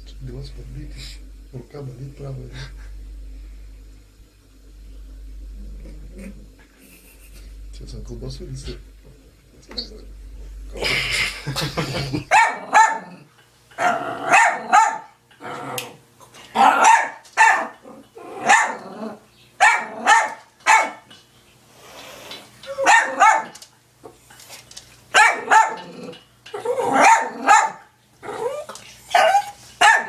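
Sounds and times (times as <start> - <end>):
dog barking: 12.3 - 13.1, 13.8 - 15.1, 16.6 - 17.8, 18.4 - 18.8, 19.6 - 21.0, 22.8 - 23.6, 25.2 - 25.9, 26.9 - 27.9, 29.1 - 30.0.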